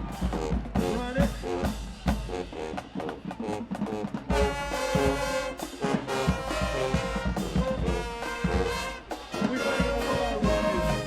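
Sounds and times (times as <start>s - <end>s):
marching band playing: 0.0s - 11.0s
brass chord held: 4.4s - 11.0s.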